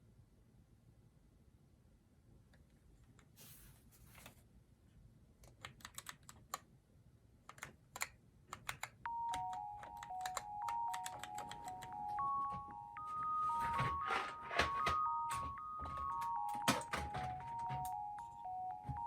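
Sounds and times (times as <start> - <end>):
mechanical keyboard clacking: 5.4 - 6.6, 7.5 - 12.3, 13.4 - 19.0
bell-like melody: 9.1 - 19.0.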